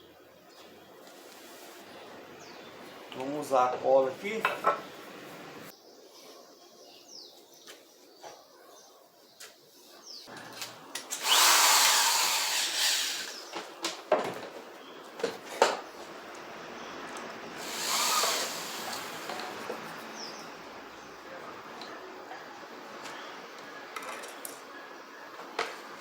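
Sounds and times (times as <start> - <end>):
electric drill driving screws: 11.1 - 13.5, 17.6 - 19.9.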